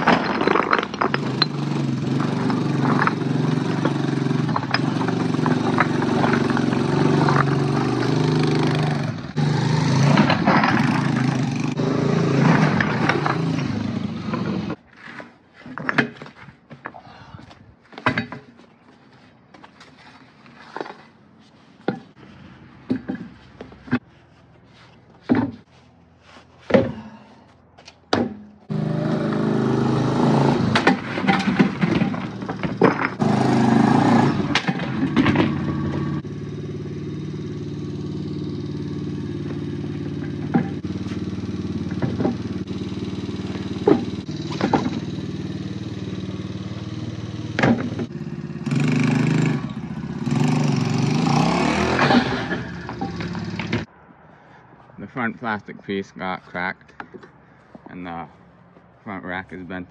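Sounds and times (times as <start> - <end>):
single-cylinder engine revving: 0.8 - 14.8, 28.6 - 53.9.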